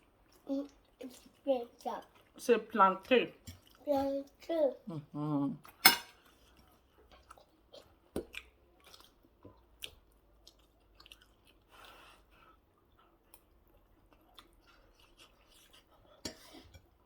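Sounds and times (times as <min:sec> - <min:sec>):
faint chewing: 0:00.0 - 0:02.4, 0:03.0 - 0:04.5, 0:05.6 - 0:17.0.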